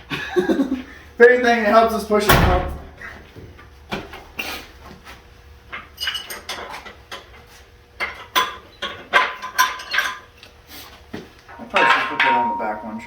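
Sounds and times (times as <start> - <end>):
metal tools clanking: 11.5 - 13.0.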